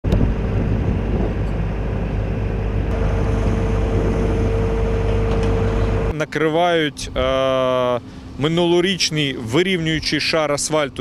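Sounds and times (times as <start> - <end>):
heavy diesel machinery rumbling: 0.0 - 6.2.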